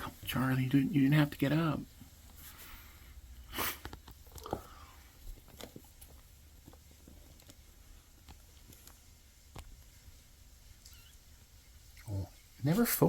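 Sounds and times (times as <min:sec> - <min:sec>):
cats shuffling in bedding: 0:01.4 - 0:11.6
faint squeak: 0:10.8 - 0:11.3.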